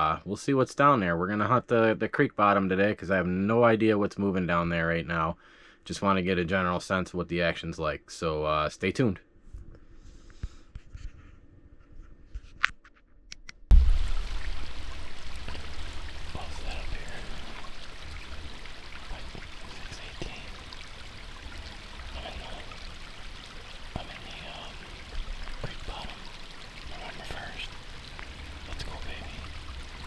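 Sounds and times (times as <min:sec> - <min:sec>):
low rumble: 0:13.7 - 0:22.6
creek water rushing: 0:13.7 - 0:30.0.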